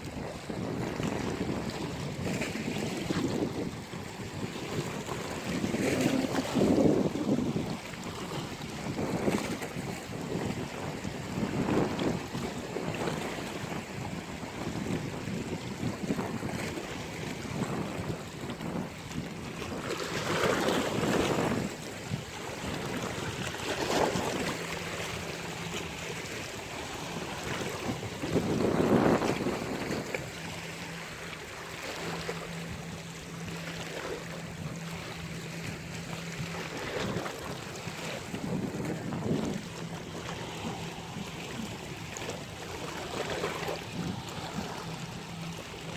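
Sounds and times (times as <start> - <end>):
sea waves surging against shore: 0.0 - 45.9
wind buffeting microphone: 0.0 - 45.9.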